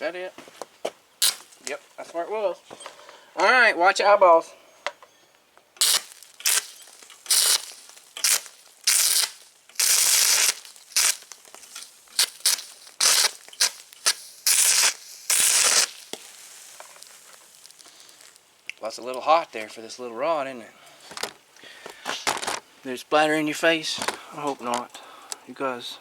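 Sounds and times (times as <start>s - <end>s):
welding arc crackling and hissing: 1.2s - 1.8s, 5.8s - 18.8s.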